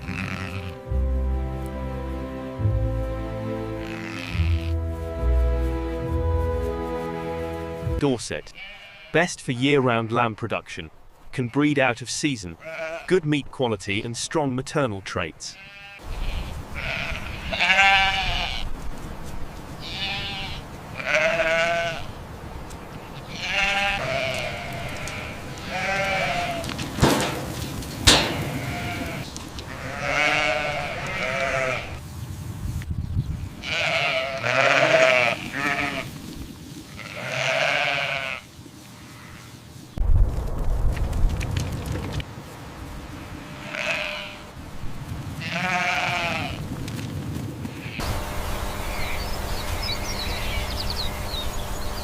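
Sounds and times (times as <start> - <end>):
sheep bleating: 0.0 - 0.8, 3.8 - 4.8, 8.5 - 9.3, 12.6 - 13.2, 15.5 - 18.7, 19.8 - 22.2, 23.1 - 26.8, 28.1 - 32.0, 33.5 - 36.1, 36.9 - 39.6, 43.4 - 44.5, 45.4 - 46.6, 47.7 - 48.1
sharp knocks: 27.0 - 28.8.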